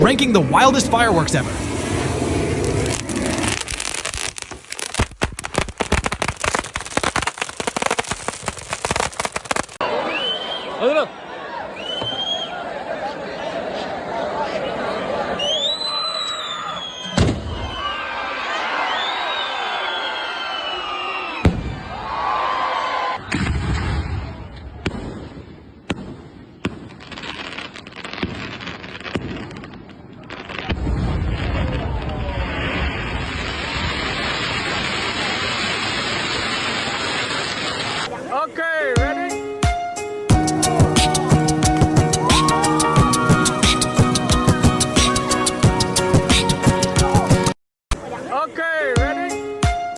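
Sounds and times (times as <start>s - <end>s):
firework bangs: 0.0s - 9.8s, 21.4s - 22.3s, 23.2s - 38.1s
fireworks crackling: 0.0s - 10.4s, 23.3s - 38.3s.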